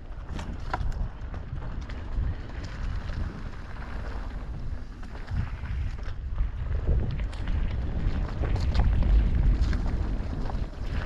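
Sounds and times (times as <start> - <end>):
electric bike rumble on dirt: 0.0 - 11.0
wind buffeting microphone: 0.0 - 11.0.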